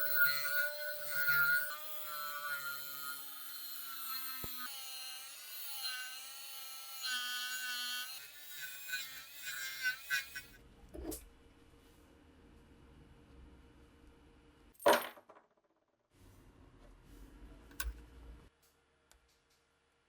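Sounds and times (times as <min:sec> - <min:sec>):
rotary tool whining on metal: 0:00.0 - 0:11.1.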